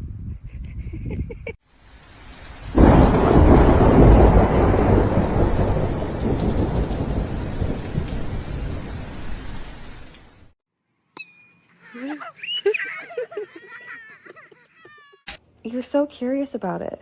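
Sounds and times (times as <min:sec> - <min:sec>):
rain falling: 0:01.6 - 0:10.6
thunder clap rumbling: 0:02.3 - 0:10.5.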